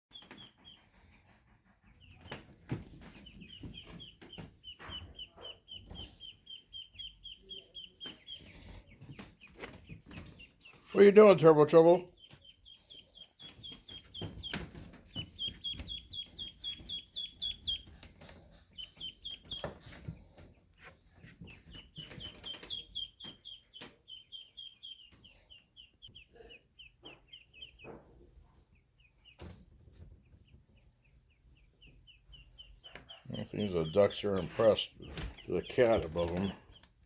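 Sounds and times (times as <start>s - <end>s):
knocks and rustles: 0.1s - 6.4s, 13.4s - 24.0s, 32.9s - 37.0s
ducklings peeping: 0.1s - 37.0s.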